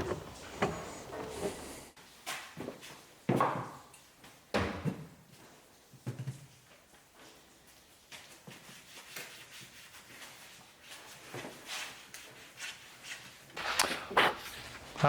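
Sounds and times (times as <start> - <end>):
faint handling clicks and taps: 0.0 - 1.9.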